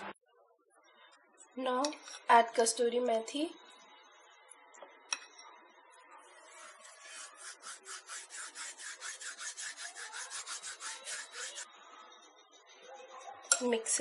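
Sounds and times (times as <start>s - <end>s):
dried leaves rubbed by hand: 6.4s - 11.6s.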